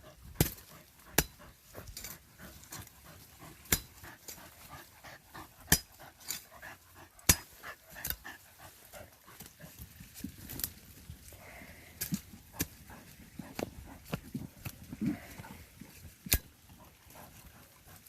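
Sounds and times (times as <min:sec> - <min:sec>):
dog at hole: 0:00.0 - 0:10.2, 0:12.2 - 0:18.0
chopping strikes into root: 0:07.3 - 0:08.2.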